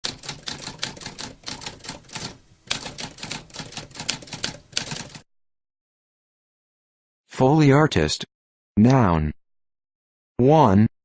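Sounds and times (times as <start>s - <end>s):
typewriter key clacks: 0.0s - 5.2s.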